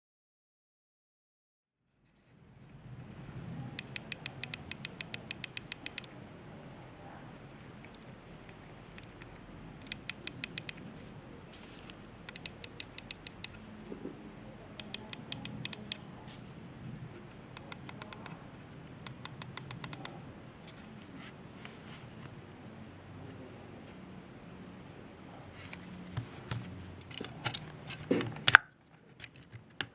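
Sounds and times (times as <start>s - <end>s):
mouse button clicks: 17.6s - 20.2s.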